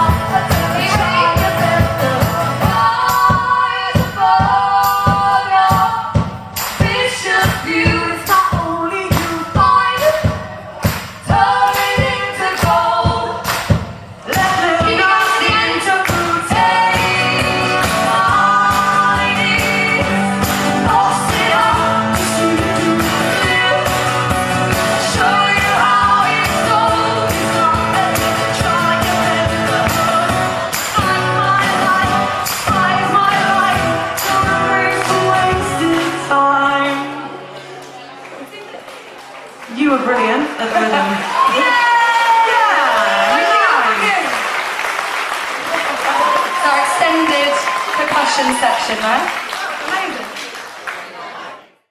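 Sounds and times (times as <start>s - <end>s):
live band singing: 0.0s - 38.5s
audience clapping and banging: 5.0s - 8.0s, 8.6s - 51.6s.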